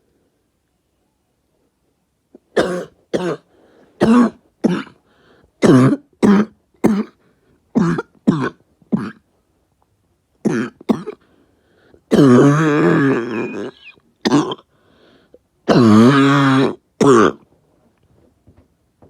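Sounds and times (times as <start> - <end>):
person coughing: 2.6 - 5.0, 5.6 - 7.2, 7.8 - 9.2, 10.5 - 11.2, 12.1 - 14.6.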